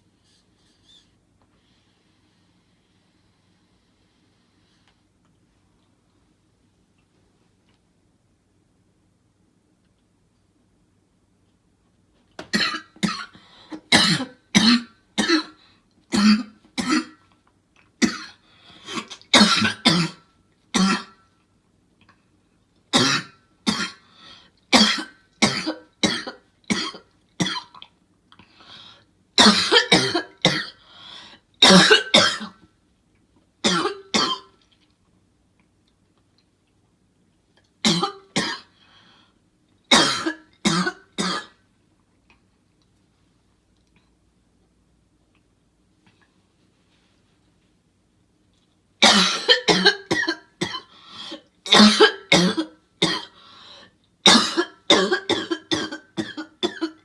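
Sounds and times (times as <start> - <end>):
person coughing: 12.4 - 17.2, 18.0 - 20.2, 20.8 - 21.2, 23.0 - 24.0, 24.8 - 27.7, 29.4 - 30.8, 31.6 - 32.6, 33.6 - 34.5, 37.9 - 38.7, 39.9 - 41.6, 49.0 - 53.4, 54.3 - 57.0.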